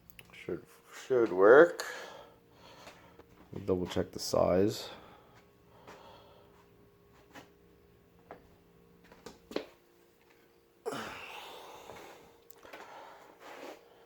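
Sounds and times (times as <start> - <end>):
low steady hum: 0.0 - 14.0
rustling scrape: 13.4 - 13.9.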